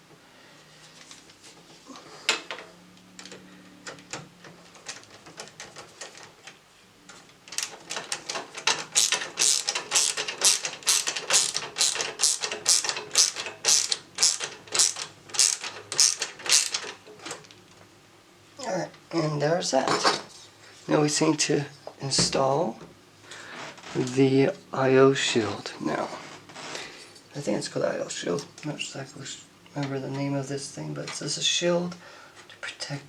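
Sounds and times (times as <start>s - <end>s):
screwdriver ratcheting clicks: 7.5s - 17.0s.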